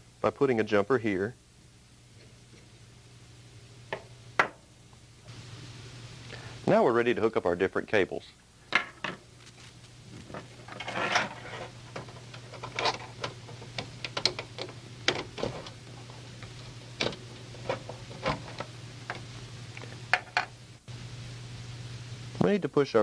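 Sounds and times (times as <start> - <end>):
steady low hum: 0.0 - 23.0
rustle: 9.4 - 11.8.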